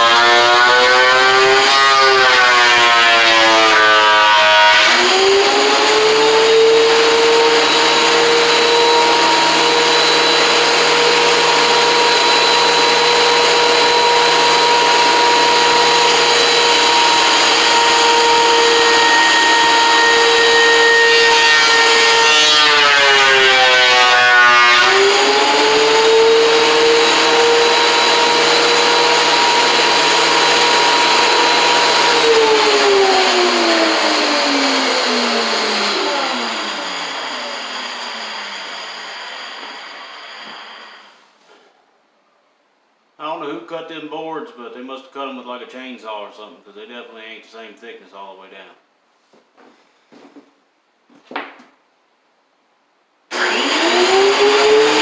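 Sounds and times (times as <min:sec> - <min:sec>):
thickness planer motor whining: 0:00.0 - 0:41.2, 0:53.3 - 0:55.0.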